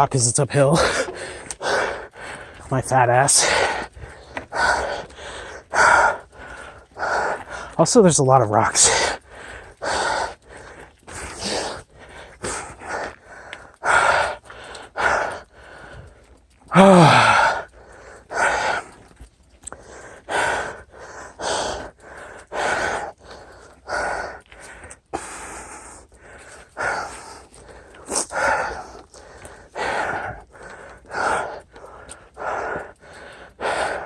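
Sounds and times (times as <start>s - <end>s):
man breathing hard: 0.6s - 7.8s, 8.6s - 34.0s
man groaning: 16.7s - 17.6s.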